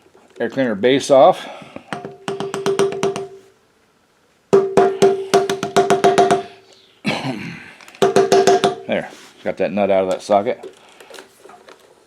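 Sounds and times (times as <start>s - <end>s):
impact driver hammering: 1.9s - 3.4s, 4.6s - 6.6s, 8.0s - 8.9s.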